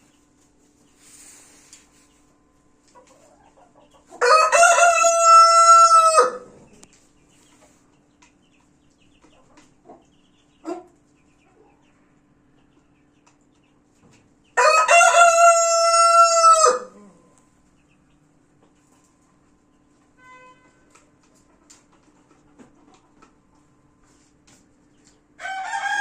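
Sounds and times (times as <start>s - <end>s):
cockerel crowing: 4.2s - 6.6s, 14.6s - 17.1s, 25.4s - 26.0s.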